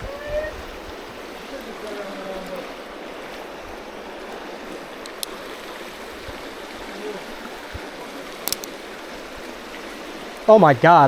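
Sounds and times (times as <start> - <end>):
creek water rushing: 0.0 - 11.0.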